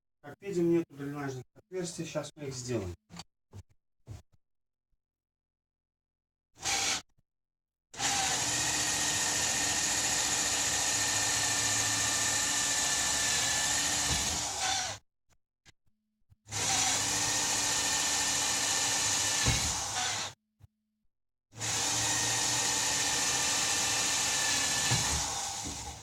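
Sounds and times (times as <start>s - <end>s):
electric drill whining: 6.6s - 7.0s, 8.0s - 15.0s, 16.5s - 20.4s, 21.6s - 26.0s.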